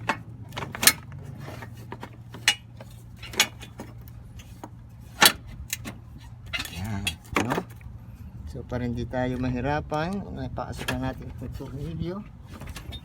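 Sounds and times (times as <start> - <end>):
metal tools and bolts clanking: 0.0 - 7.8, 12.5 - 13.0.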